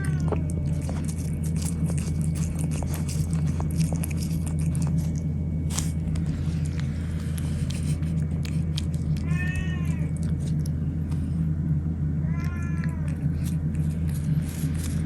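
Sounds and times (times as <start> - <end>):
cat meowing: 0.0 - 0.6, 9.2 - 10.2, 12.2 - 13.3
steady low hum: 0.0 - 15.0.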